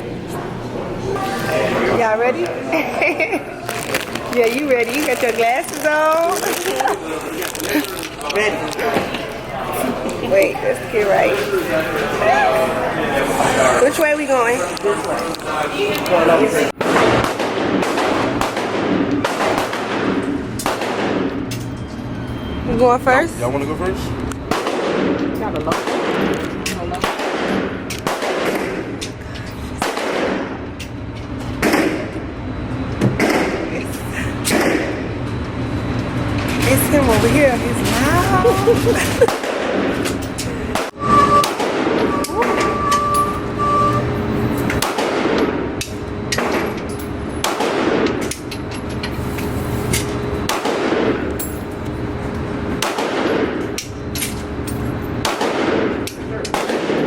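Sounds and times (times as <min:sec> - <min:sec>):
gunshots with long echo: 0:16.8 - 0:21.3, 0:24.5 - 0:26.3, 0:27.0 - 0:29.0, 0:29.8 - 0:30.6, 0:50.5 - 0:51.2, 0:52.8 - 0:53.6, 0:55.2 - 0:56.0.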